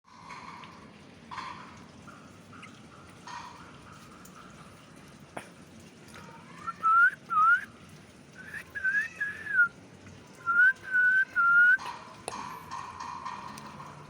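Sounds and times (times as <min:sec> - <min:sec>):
person whistling notes: 0:06.8 - 0:07.7, 0:08.4 - 0:09.7, 0:10.5 - 0:11.8.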